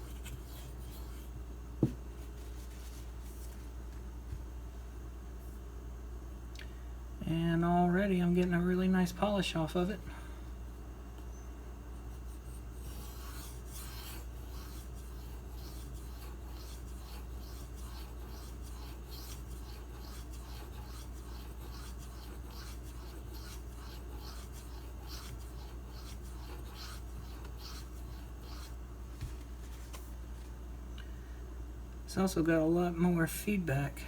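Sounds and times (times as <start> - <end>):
knife scraping on whetstone: 12.2 - 28.8.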